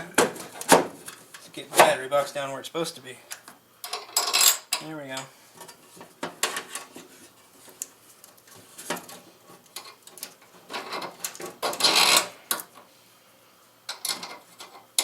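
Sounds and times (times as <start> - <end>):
metal rattling scrape: 10.5 - 12.4.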